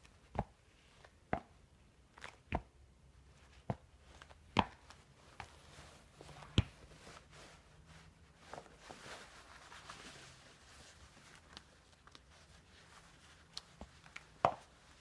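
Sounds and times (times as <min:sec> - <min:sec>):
faint rustling: 0:03.4 - 0:15.0.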